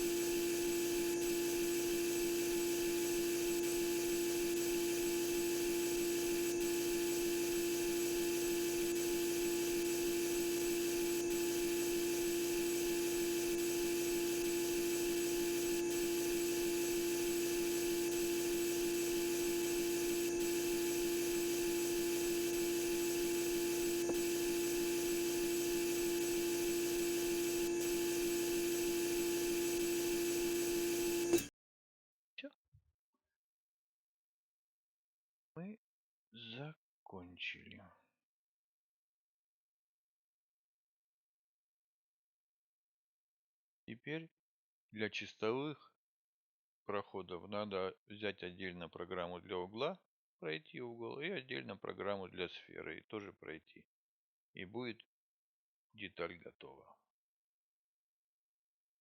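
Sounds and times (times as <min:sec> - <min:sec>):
lathe humming: 0:00.0 - 0:31.5.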